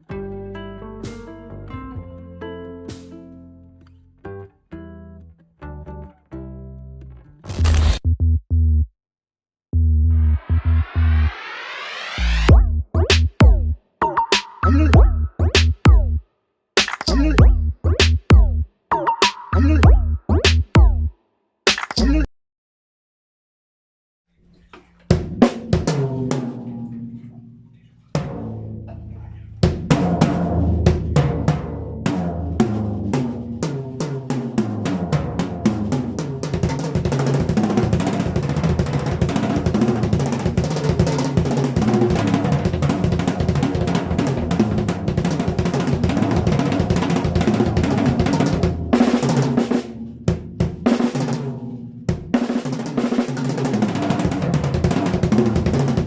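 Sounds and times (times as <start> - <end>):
drum kit playing fast fills: 10.3 - 16.2, 16.8 - 21.1, 21.7 - 22.2, 29.6 - 56.0.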